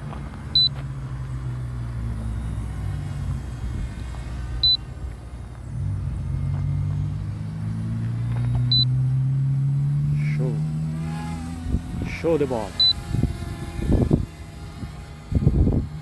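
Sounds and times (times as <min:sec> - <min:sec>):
low steady hum: 0:00.0 - 0:16.0.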